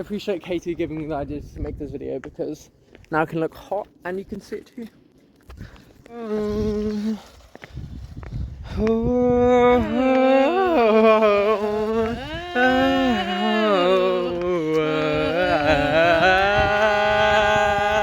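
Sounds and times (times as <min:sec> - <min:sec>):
person singing unaccompanied: 0:08.8 - 0:18.0.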